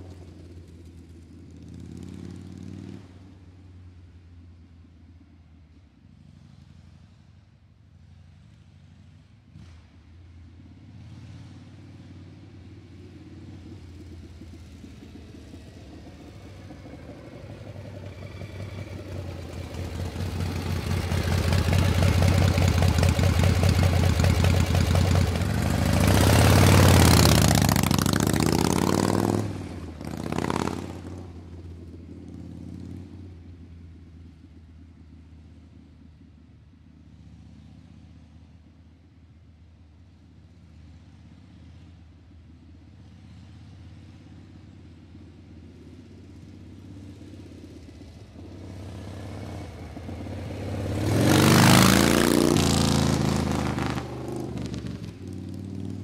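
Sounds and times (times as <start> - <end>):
vehicle engine passing by: 8.1 - 33.7, 42.9 - 56.0.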